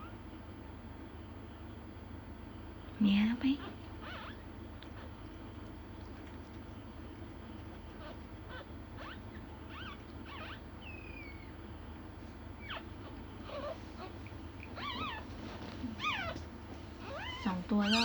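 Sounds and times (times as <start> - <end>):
steady low hum: 0.0 - 18.0
puppies squeaking and whimpering: 3.6 - 18.0.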